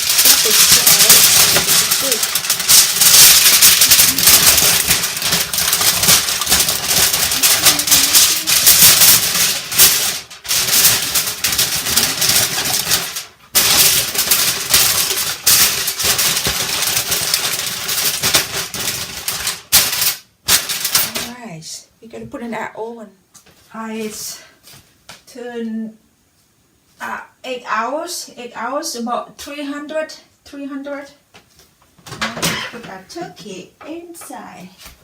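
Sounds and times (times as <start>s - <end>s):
aluminium foil crinkling: 0.0s - 21.4s.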